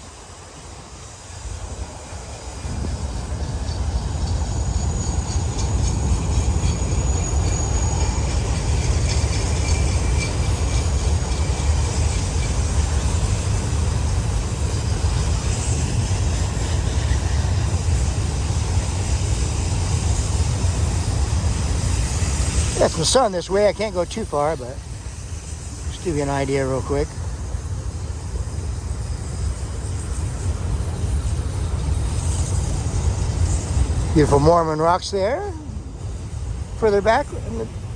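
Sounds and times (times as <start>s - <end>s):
freight train wheels rumbling on rail: 0.0s - 37.9s
high wheel squeal: 2.4s - 13.5s.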